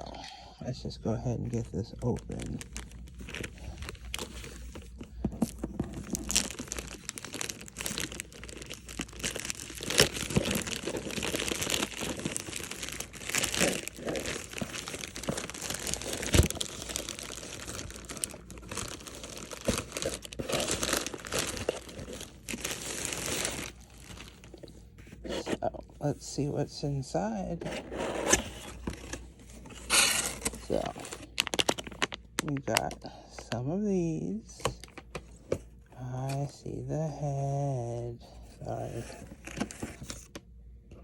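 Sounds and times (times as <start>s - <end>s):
packaging torn and crinkled: 1.6s - 24.7s, 29.7s - 33.0s.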